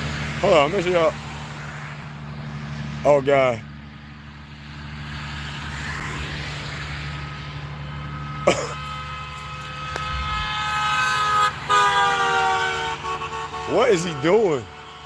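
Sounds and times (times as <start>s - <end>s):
car passing: 3.8s - 14.2s.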